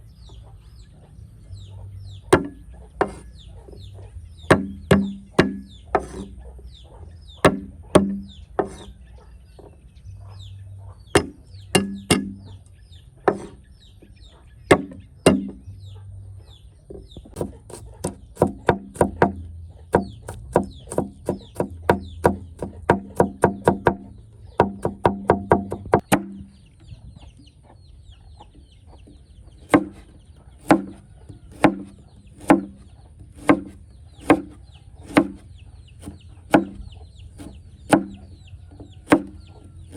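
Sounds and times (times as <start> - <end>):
knife chopping on cutting board: 2.3 - 3.3, 4.5 - 6.3, 7.5 - 8.9, 11.2 - 12.4, 13.3 - 13.6, 14.7 - 15.6, 17.3 - 24.0, 24.6 - 26.4, 29.7 - 30.0, 30.6 - 35.4, 36.0 - 36.8, 37.4 - 38.2, 39.0 - 39.9.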